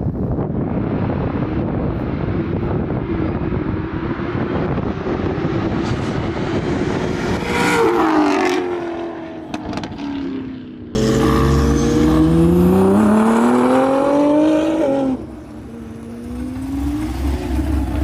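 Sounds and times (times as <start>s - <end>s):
wind and road noise: 0.0s - 18.0s
car engine revving hard: 11.0s - 18.0s.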